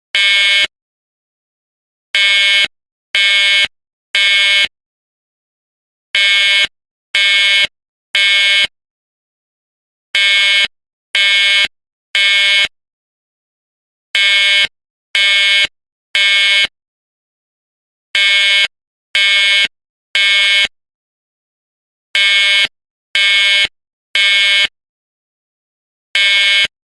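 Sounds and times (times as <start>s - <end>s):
fire alarm horn blasts: 0.2s - 0.7s, 2.2s - 4.7s, 6.2s - 8.7s, 10.2s - 12.8s, 14.2s - 16.7s, 18.2s - 20.8s, 22.2s - 24.8s, 26.2s - 26.7s.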